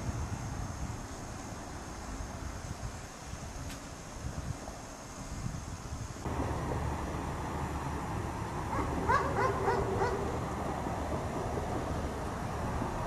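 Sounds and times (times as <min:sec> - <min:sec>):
steady low rumble: 0:06.2 - 0:13.0
dog barking: 0:08.7 - 0:10.3.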